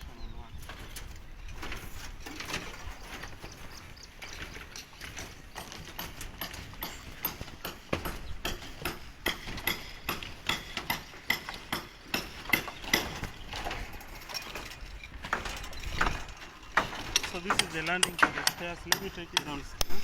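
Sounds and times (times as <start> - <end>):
hard knocks and clacks: 4.3 - 20.0.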